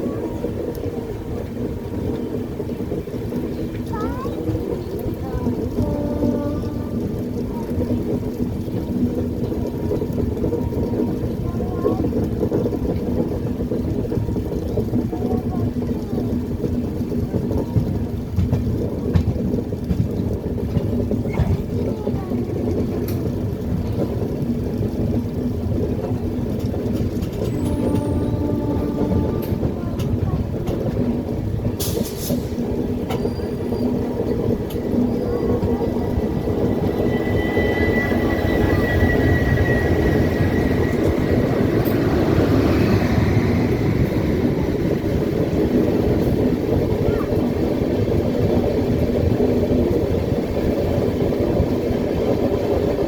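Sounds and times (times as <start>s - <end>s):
train wheels rumbling on rail: 0.0s - 53.0s
faint high whine: 35.3s - 43.8s.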